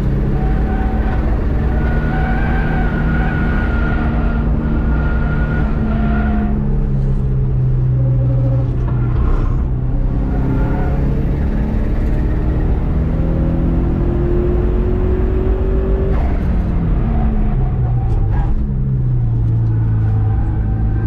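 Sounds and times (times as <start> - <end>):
car engine revving: 0.0 - 21.0.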